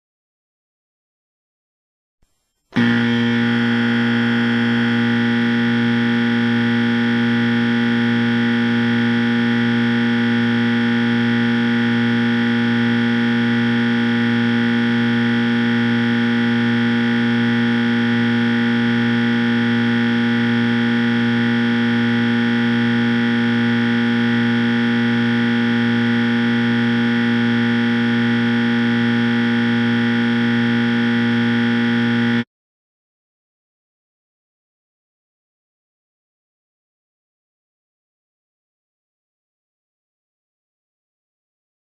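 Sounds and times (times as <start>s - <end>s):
distorted looping buzzer: 2.8s - 32.5s.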